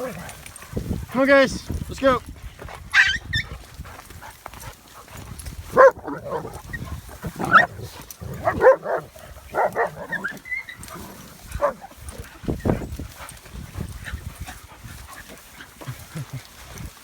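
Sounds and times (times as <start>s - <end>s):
dog high yips: 2.9s - 3.5s, 9.6s - 10.9s
dogs barking: 5.7s - 12.3s.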